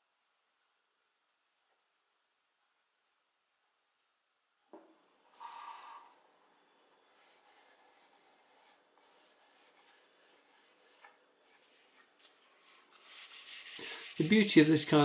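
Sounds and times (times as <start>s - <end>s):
cloth pad rubbing on wood: 12.6s - 15.0s.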